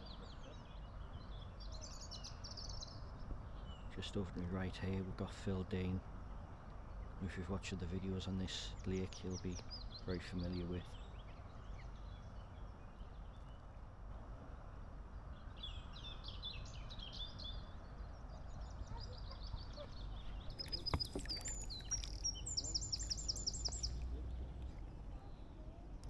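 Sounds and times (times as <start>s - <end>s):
songbirds singing: 0.0s - 26.0s.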